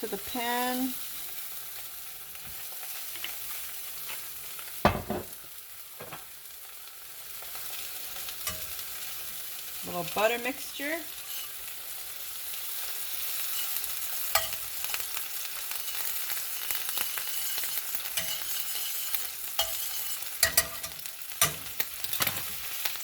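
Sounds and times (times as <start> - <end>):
oil and butter sizzling in pan: 0.0 - 23.0
utensil clinking against pan: 8.4 - 8.8, 13.6 - 14.8, 17.4 - 22.5.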